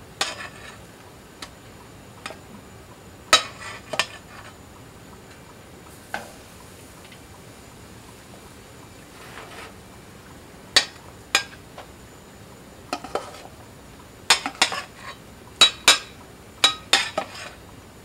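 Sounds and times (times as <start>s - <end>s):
metal utensil clinking on cookware: 14.3s - 17.6s.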